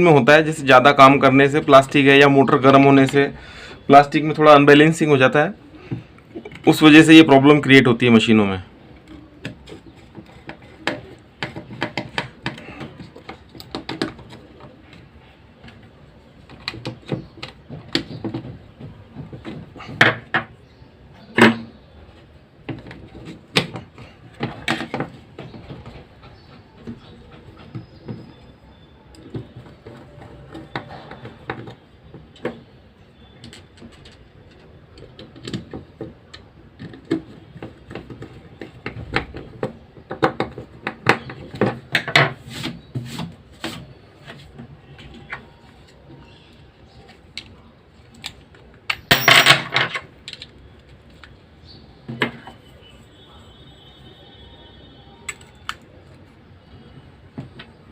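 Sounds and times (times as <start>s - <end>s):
plastic and metal parts clicking: 33.4s - 42.2s, 55.3s - 56.2s.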